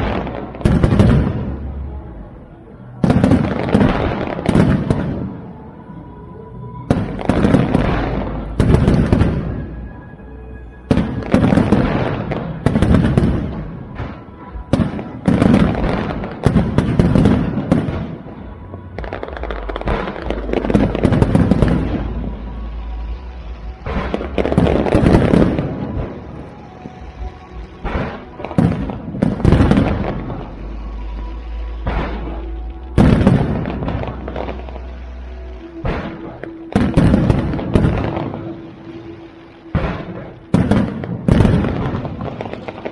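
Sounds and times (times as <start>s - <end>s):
firework crackling: 0.0s - 42.9s
music playing: 0.0s - 42.9s
firework shells booming: 39.7s - 42.9s.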